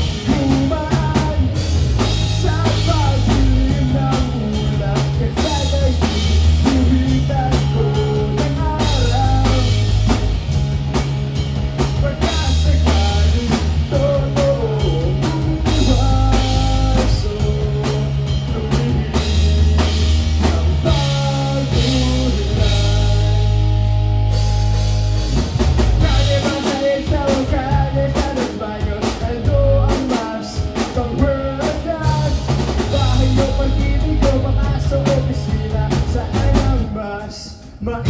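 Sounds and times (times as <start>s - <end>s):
melodic lead line: 0.0s - 36.9s
bass line: 0.0s - 37.2s
drum kit: 0.0s - 38.0s
guitar: 0.0s - 38.0s.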